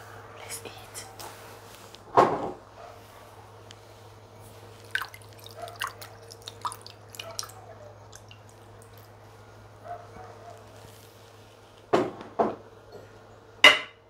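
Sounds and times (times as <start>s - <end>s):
wet eating sounds: 4.6s - 9.4s.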